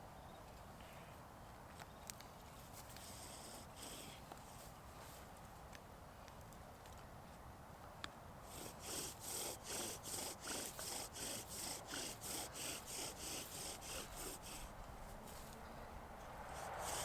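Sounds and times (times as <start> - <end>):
hand scraping wood: 8.5 - 15.6, 16.2 - 17.0.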